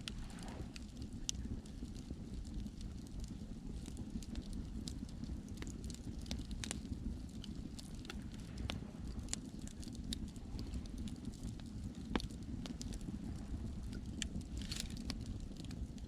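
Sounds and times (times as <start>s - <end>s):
sea waves rumbling: 0.0s - 0.8s, 8.0s - 9.3s
wood fire crackling and popping: 0.0s - 16.0s.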